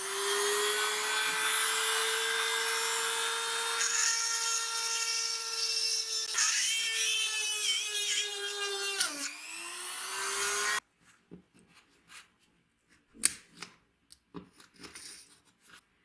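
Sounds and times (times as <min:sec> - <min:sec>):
power tool whining: 0:00.0 - 0:10.8.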